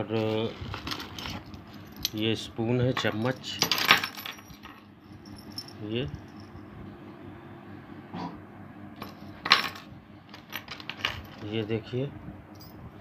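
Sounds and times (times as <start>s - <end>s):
sharp metallic jingle: 3.0s - 6.7s.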